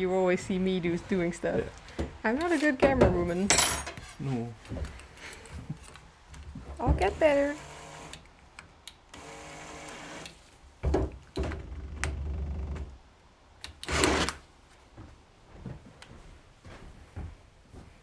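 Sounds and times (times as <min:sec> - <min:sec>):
drill handling knocks and clatter: 0:01.9 - 0:07.2, 0:10.8 - 0:13.0
electric drill motor running: 0:07.1 - 0:08.3, 0:09.1 - 0:10.4, 0:11.5 - 0:12.9, 0:13.8 - 0:14.4.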